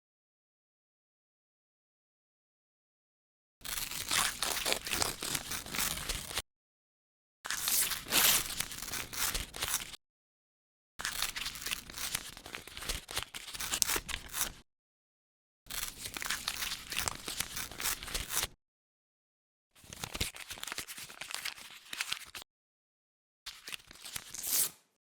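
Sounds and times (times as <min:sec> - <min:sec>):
paper tearing: 0:03.6 - 0:06.4, 0:07.5 - 0:09.9, 0:16.1 - 0:18.4, 0:24.1 - 0:24.8.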